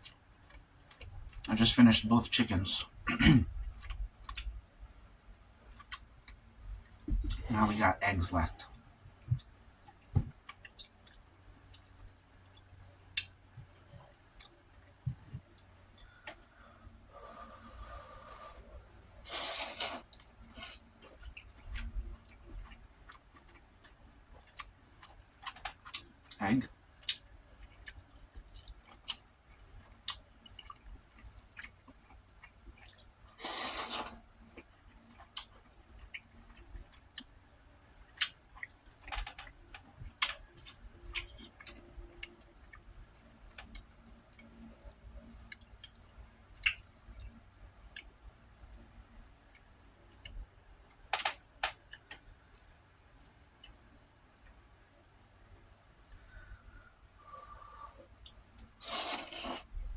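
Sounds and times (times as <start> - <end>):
person chewing with mouth clicks: 27.0 - 37.4.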